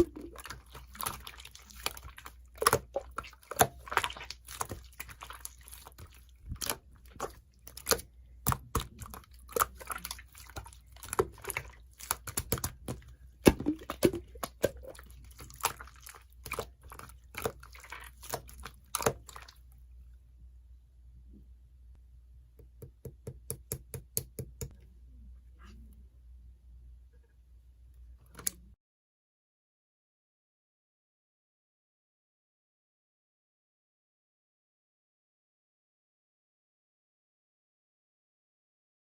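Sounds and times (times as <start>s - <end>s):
hands squishing slime: 0.0s - 19.7s.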